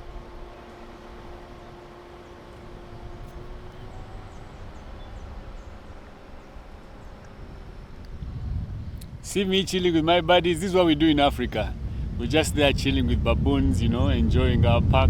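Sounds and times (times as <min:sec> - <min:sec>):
vehicle engine humming: 0:00.0 - 0:14.4
low road rumble: 0:00.0 - 0:15.0.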